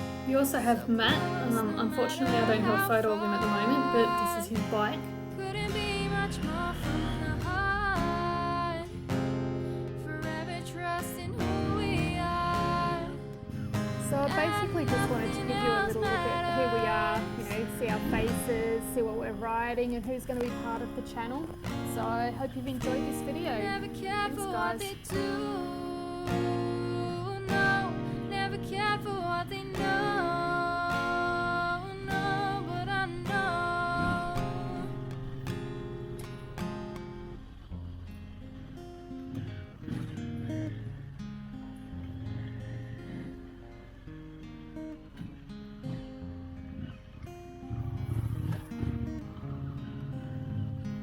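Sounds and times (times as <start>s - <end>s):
person singing: 0.0s - 9.0s, 10.0s - 35.2s
song with strummed guitar and voice: 0.0s - 38.0s.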